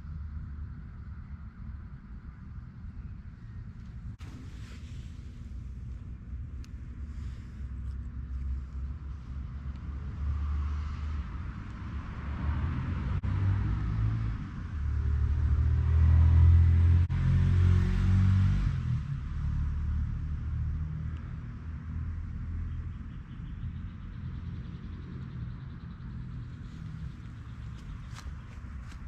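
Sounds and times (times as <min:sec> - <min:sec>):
passing vehicle engine rumble: 0:00.0 - 0:29.0.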